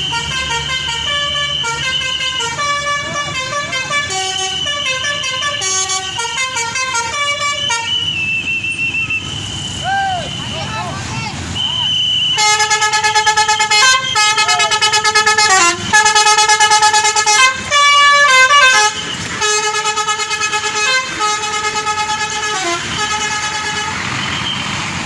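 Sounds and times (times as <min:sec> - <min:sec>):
musical horn playing melody: 0:00.0 - 0:08.0, 0:12.3 - 0:24.0.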